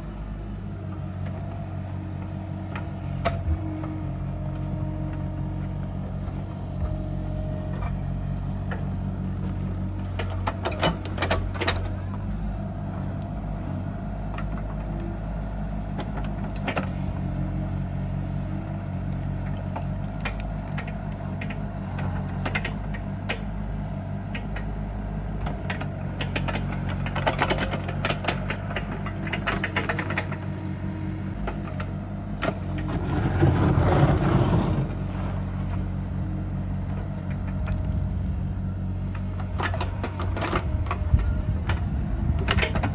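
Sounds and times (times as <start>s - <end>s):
diesel engine running: 0.0s - 42.9s.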